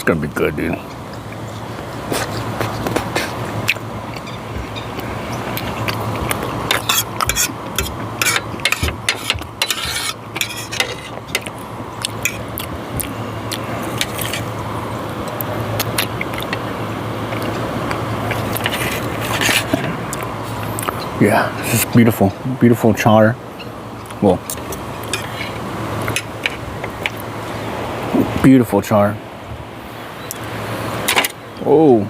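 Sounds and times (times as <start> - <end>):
steady low hum: 0.0 - 32.0
cutlery scraping on plate: 5.6 - 11.5, 12.2 - 12.4, 18.3 - 19.8, 24.5 - 26.6.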